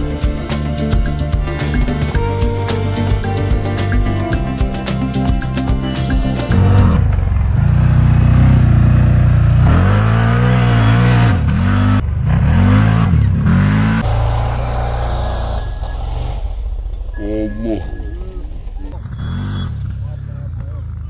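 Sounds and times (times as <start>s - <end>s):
vehicle engine revving: 6.5s - 16.5s, 19.0s - 21.0s.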